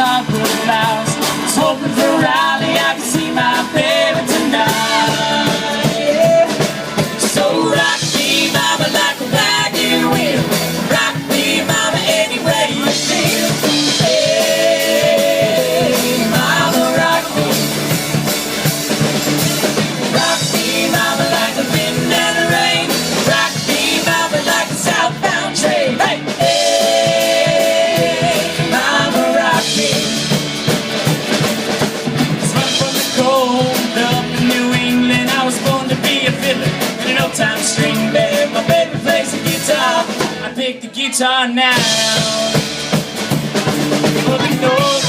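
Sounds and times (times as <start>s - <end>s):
country-rock band playing: 0.0s - 45.0s.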